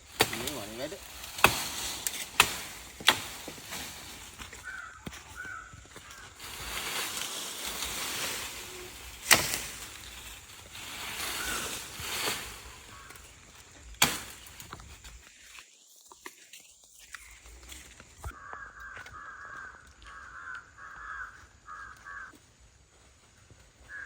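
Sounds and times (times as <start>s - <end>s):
rustling: 0.0s - 15.7s.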